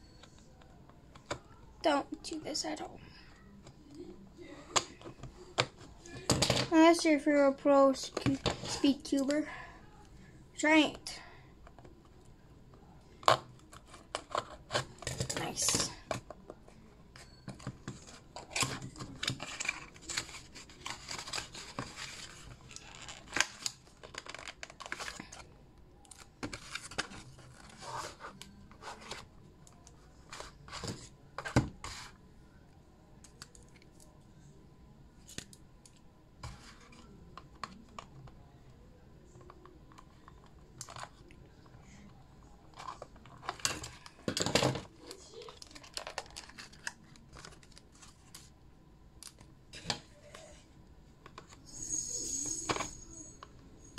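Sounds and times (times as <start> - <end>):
wrapping rustling and crinkling: 17.8 - 29.3, 45.0 - 48.6.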